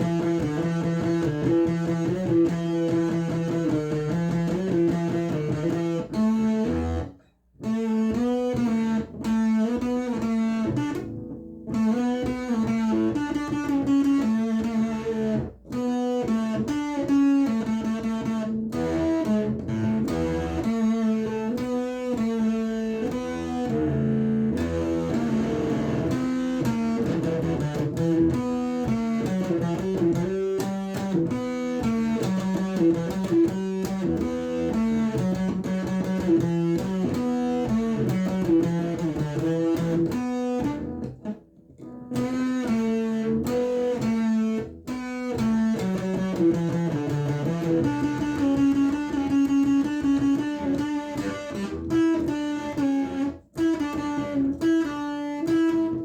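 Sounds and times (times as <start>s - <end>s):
fuzz electric guitar solo: 0.0s - 56.0s.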